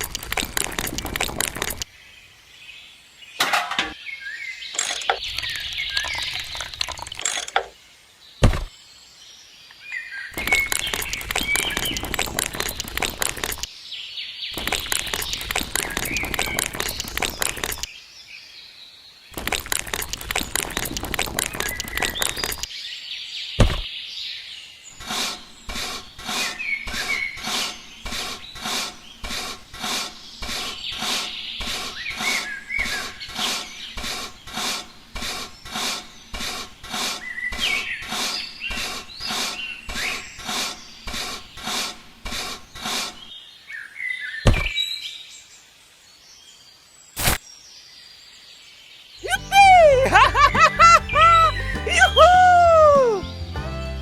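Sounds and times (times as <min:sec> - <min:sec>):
birds chirping: 0:00.0 - 0:53.5
single thumps: 0:08.4 - 0:08.7, 0:23.6 - 0:23.9.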